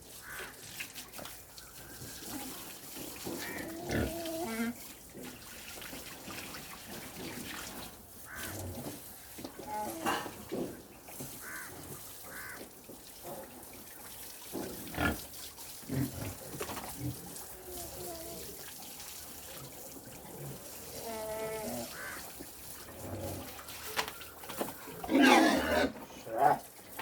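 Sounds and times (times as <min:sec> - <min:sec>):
running water hiss: 0:00.0 - 0:27.0
pigs grunting: 0:03.2 - 0:05.3, 0:09.6 - 0:12.4, 0:14.6 - 0:18.6, 0:22.8 - 0:23.6, 0:24.9 - 0:26.7
pig squeals: 0:25.1 - 0:26.0.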